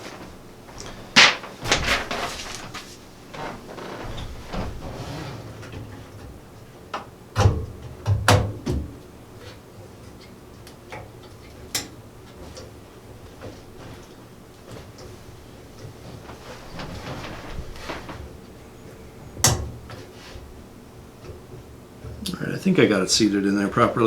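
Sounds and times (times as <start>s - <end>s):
soft rustling: 0.0s - 6.6s, 13.3s - 19.3s.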